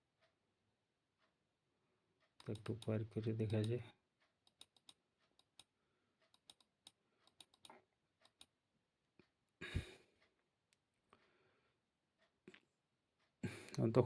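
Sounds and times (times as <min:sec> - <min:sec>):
computer mouse clicks: 0:02.4 - 0:03.8, 0:04.4 - 0:08.6.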